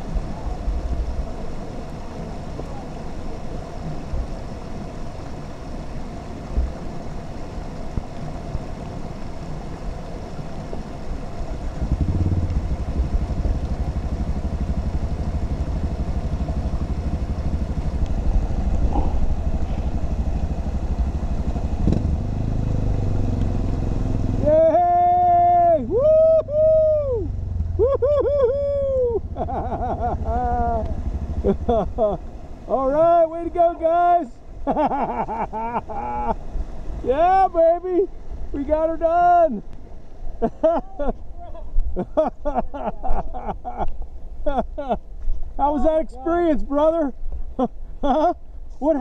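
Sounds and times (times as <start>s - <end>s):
motorcycle engine revving: 11.7s - 24.5s, 26.7s - 27.8s, 29.2s - 32.0s.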